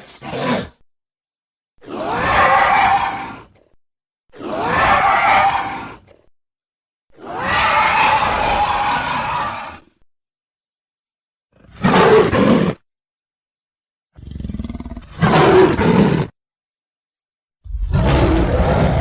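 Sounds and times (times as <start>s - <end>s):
dinosaur roar: 4.4s - 6.2s, 7.2s - 10.0s, 17.7s - 19.0s.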